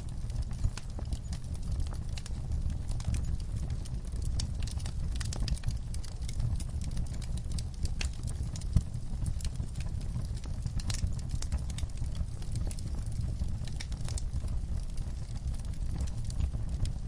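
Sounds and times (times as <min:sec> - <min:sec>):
low rumble of burning: 0:00.0 - 0:17.0
wood fire crackling and popping: 0:00.0 - 0:17.0.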